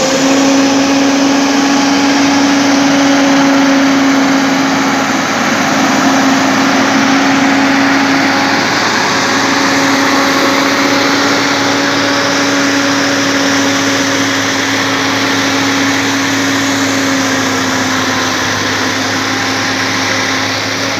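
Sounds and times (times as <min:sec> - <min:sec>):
diesel engine running steadily: 0:00.0 - 0:20.9.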